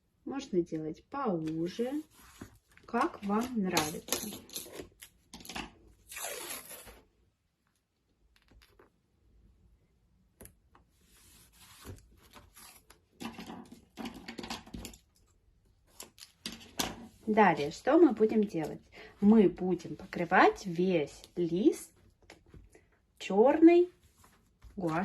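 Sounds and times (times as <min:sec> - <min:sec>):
masking tape pulled off roll: 0:06.1 - 0:07.1.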